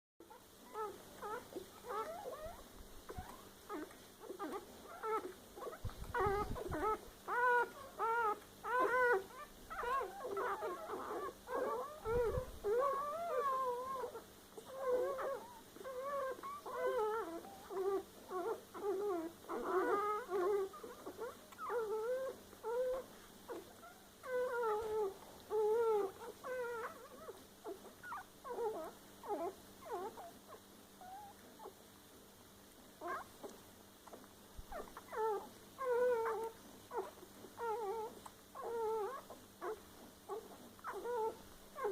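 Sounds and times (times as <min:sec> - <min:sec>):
puppies whimpering and squeaking: 0:00.2 - 0:31.8, 0:33.0 - 0:41.9.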